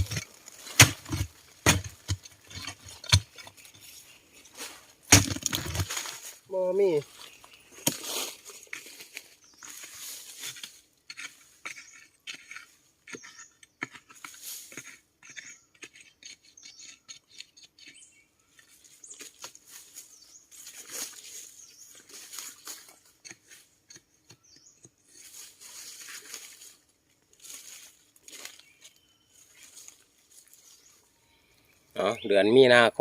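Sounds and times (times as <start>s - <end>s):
forest litter rustling and crackling: 0.0s - 11.5s, 18.7s - 23.6s, 25.0s - 31.9s.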